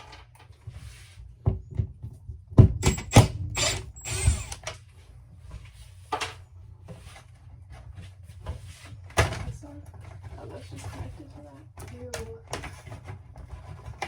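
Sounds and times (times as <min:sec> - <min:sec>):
hand tools knocking and scraping: 0:01.5 - 0:04.7.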